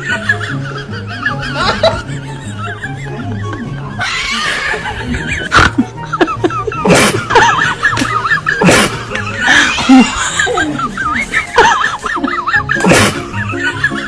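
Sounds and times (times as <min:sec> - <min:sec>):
wavering animal calls: 0:03.9 - 0:05.9, 0:07.6 - 0:12.1.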